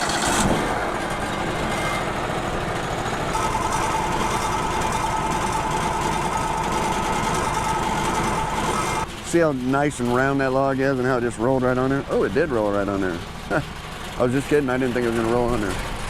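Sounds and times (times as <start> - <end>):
high-pitched whine: 0.0 - 9.4
sawmill engine running: 0.0 - 16.0.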